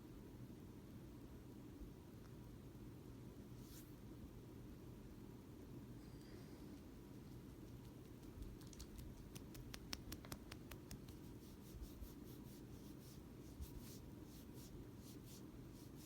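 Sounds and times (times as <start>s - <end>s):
low room rumble: 0.0s - 16.0s
small clicks and ticks: 7.7s - 11.2s.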